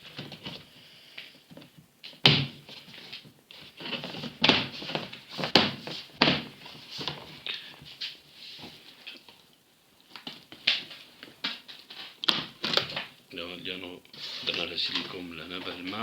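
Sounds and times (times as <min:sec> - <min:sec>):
scraping and rustling: 0:00.0 - 0:09.5, 0:10.1 - 0:13.2, 0:14.1 - 0:16.0
knocks and thunks on plastic cover: 0:01.5 - 0:08.0, 0:10.2 - 0:13.2.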